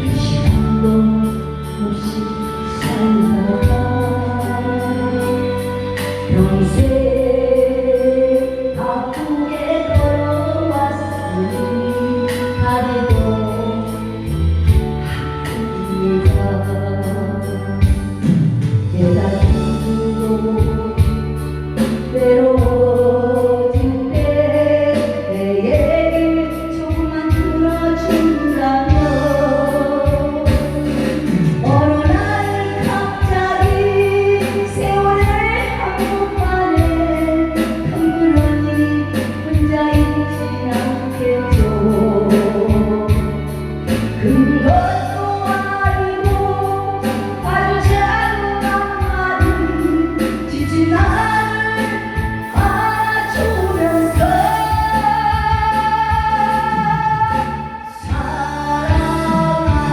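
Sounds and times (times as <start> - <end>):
song with beat and bass: 0.0 - 23.1, 26.8 - 35.4, 51.0 - 59.3.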